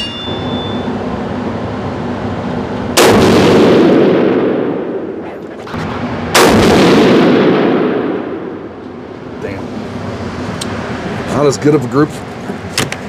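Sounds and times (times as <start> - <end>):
rifle shots echoing: 3.0 - 5.2, 5.8 - 8.8.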